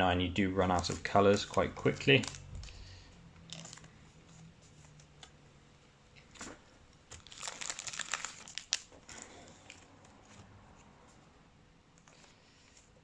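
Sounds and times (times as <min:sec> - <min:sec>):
plastic packaging crinkling: 0:00.6 - 0:04.0, 0:06.3 - 0:10.4.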